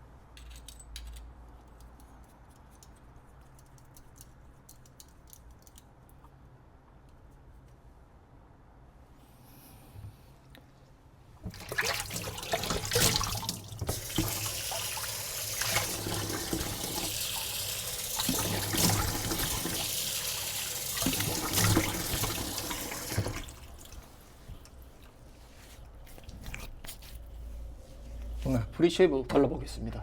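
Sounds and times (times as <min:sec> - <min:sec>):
tap water running into sink: 0:11.5 - 0:24.2.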